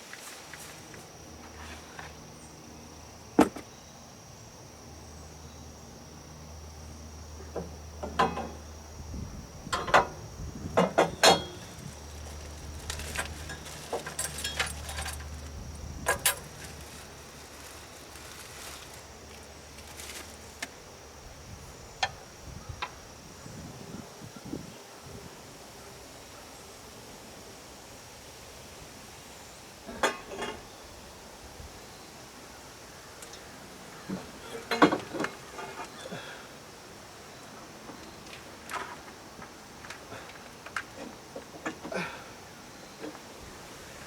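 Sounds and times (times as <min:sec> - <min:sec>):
metallic clinks of hand tools: 0:13.4 - 0:15.3.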